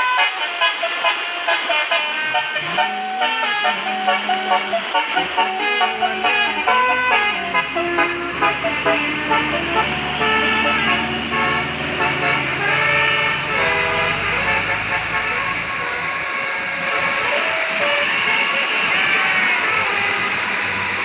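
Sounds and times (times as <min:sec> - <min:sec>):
bus engine rumble: 0:00.0 - 0:21.0
musical air horn tune: 0:00.0 - 0:21.0.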